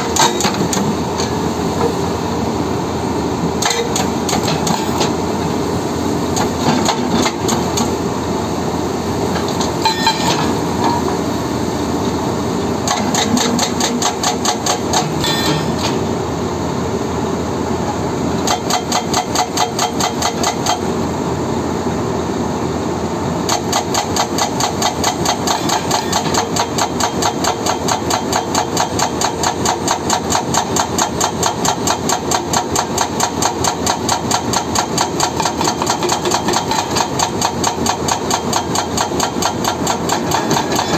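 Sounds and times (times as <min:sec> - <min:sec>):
hydraulic breaker hammering rock: 0:00.0 - 0:00.9, 0:03.6 - 0:05.2, 0:12.8 - 0:16.0, 0:18.4 - 0:20.9, 0:23.5 - 0:40.9
excavator engine running: 0:00.0 - 0:21.9, 0:23.4 - 0:40.9.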